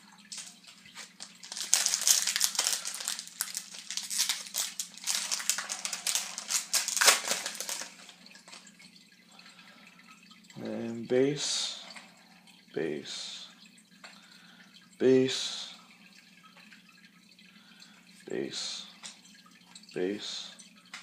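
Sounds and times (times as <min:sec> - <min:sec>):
wrapper crinkling as torn open: 0:00.3 - 0:08.7.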